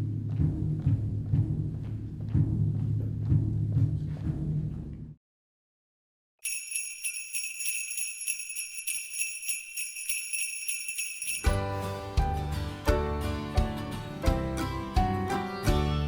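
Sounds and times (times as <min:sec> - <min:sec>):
jingle bells shaken: 0:06.4 - 0:12.0.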